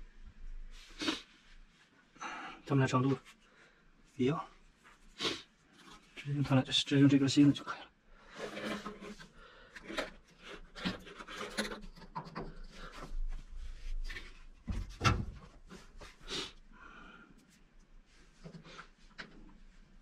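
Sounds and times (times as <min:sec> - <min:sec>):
plastic hose scraping and rubbing: 0:08.2 - 0:16.3.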